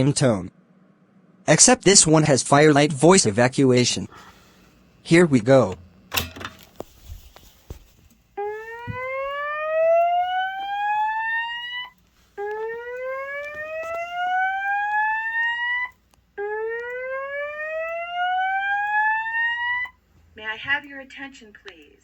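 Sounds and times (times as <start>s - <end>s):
rising whoop alarm tone: 8.4s - 20.0s.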